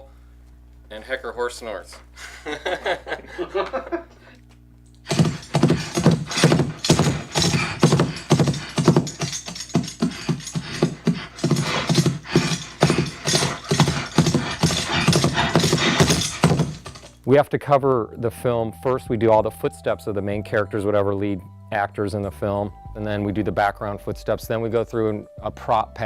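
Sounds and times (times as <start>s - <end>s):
horse snorts: 5.1s - 17.1s
bridle jingle: 5.1s - 17.2s
hoofbeats in quick rhythm: 5.1s - 17.2s.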